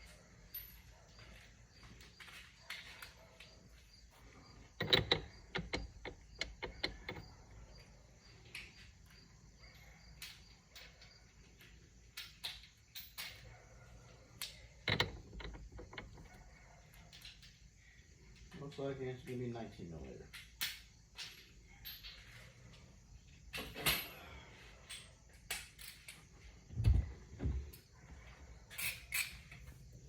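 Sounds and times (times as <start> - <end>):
metal sockets clinking: 4.6 - 7.8, 14.8 - 16.5
knocks: 14.9 - 16.4.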